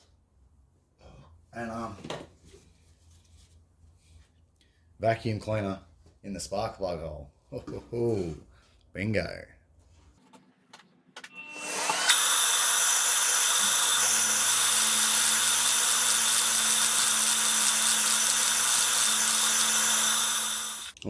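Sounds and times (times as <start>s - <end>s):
vacuum cleaner running: 11.2s - 21.0s
electric drill humming: 11.4s - 21.0s.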